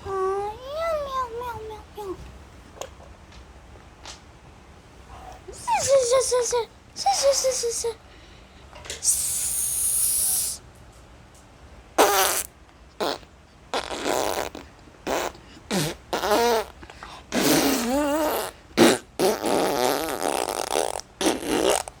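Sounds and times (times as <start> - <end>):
hissing burst: 9.0 - 10.6
fart sound effects: 12.0 - 22.0.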